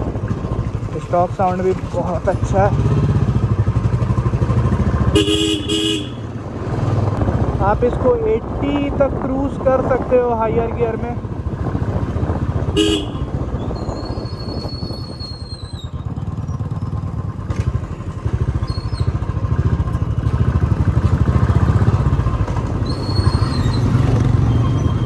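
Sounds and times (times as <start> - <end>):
motorcycle engine thumping: 11.5 - 13.9, 16.7 - 24.4.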